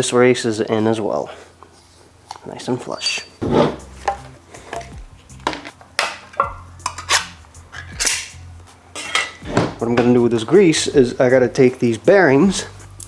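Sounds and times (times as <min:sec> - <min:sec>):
metal tools clinking: 0:02.8 - 0:08.4, 0:09.0 - 0:10.3.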